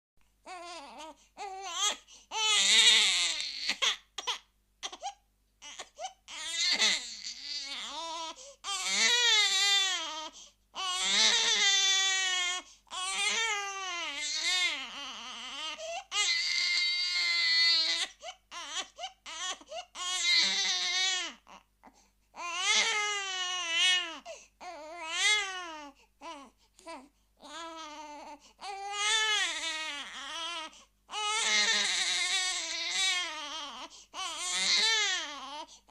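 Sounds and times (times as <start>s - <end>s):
baby crying: 0.5s - 21.7s, 22.4s - 35.9s.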